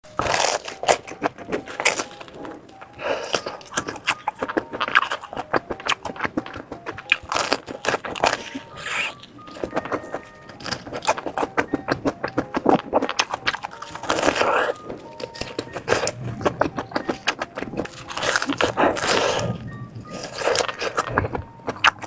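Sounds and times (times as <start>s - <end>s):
sausages being bitten and chewed: 0.0s - 22.0s
breathing: 3.0s - 3.6s.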